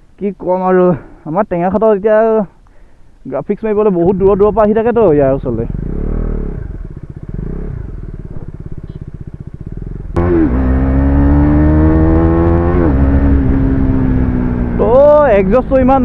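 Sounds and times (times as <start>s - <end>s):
motorcycle engine idling and revving: 4.0s - 16.0s.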